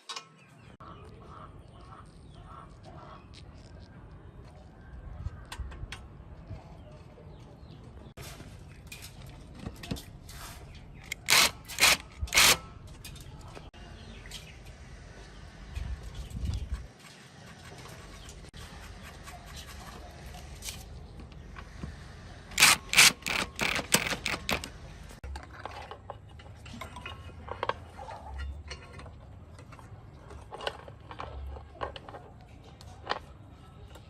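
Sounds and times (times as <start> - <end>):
light metal scraping: 8.2 - 14.6
sharp metallic clicks: 11.0 - 13.3, 22.5 - 25.2.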